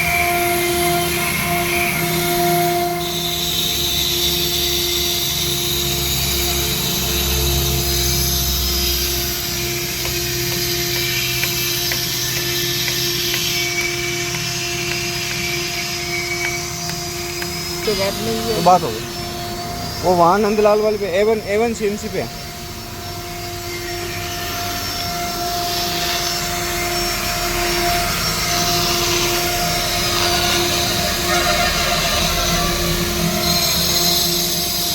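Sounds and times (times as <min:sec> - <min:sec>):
cnc spindle running: 0:00.0 - 0:34.9
router motor whine: 0:00.0 - 0:34.9
stone cutting hiss: 0:03.1 - 0:19.3, 0:24.4 - 0:34.9
low hum: 0:05.6 - 0:34.9.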